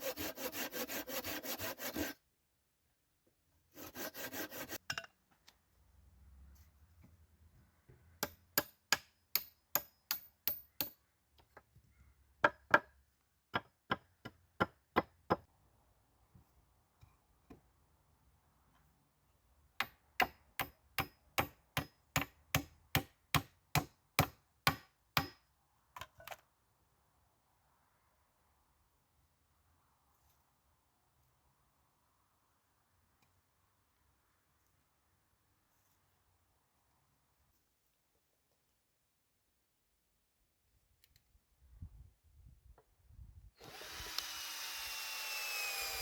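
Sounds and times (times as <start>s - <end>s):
sharp strikes on wood: 19.8s - 25.4s.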